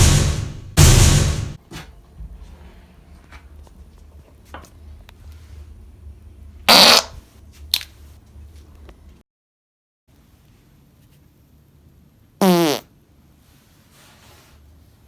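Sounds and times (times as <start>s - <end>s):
low room hum: 0.0s - 9.2s
person farting: 6.7s - 7.2s, 12.4s - 12.9s.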